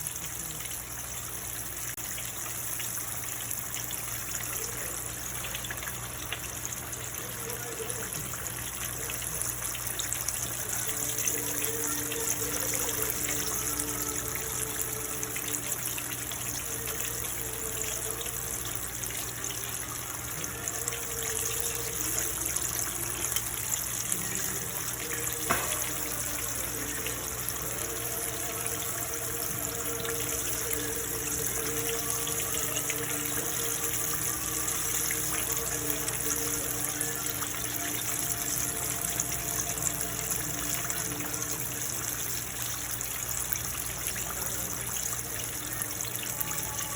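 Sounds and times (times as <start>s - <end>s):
chicken sizzling in hot oil: 0.0s - 46.9s
background music: 10.2s - 42.9s.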